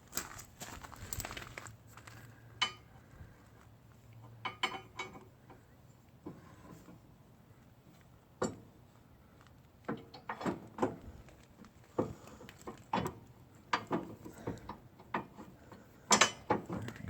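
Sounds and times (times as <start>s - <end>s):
metal clicks and knocks: 4.3s - 5.3s, 9.8s - 11.0s, 11.9s - 15.5s, 16.1s - 17.0s.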